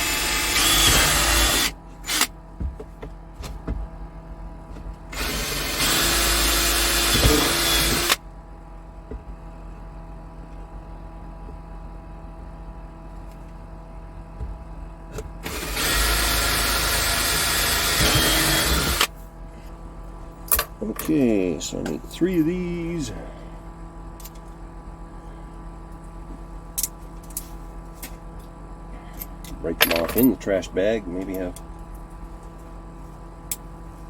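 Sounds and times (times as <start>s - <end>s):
power drill running: 0.0s - 2.3s, 5.1s - 8.2s, 15.4s - 19.1s
steady low hum: 0.0s - 34.0s.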